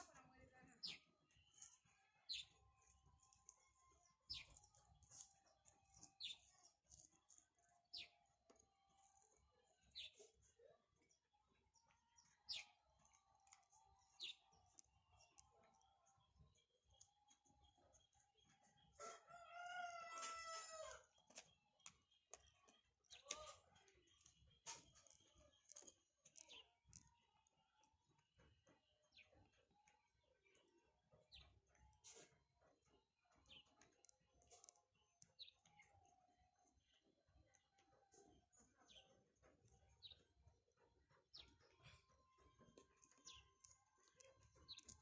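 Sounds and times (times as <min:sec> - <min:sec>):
rooster crowing: 0:19.0 - 0:21.0.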